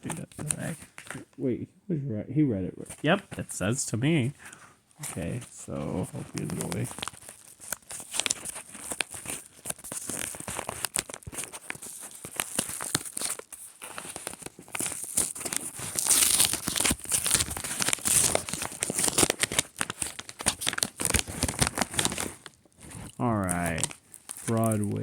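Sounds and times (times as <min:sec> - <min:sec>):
package wrapping tearing: 0:00.0 - 0:01.2, 0:05.0 - 0:25.0
wrapping crinkling by hand: 0:00.0 - 0:01.2, 0:04.4 - 0:25.0.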